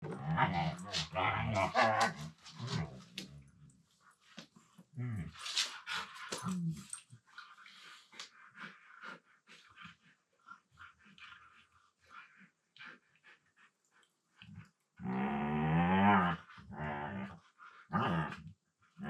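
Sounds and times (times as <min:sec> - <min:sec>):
dogs growling vocalisations: 0:00.0 - 0:03.4, 0:14.5 - 0:18.5.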